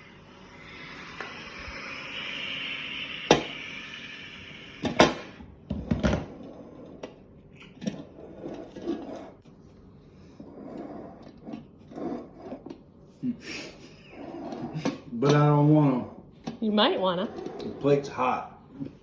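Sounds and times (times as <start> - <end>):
steady hiss: 0.0 - 5.4.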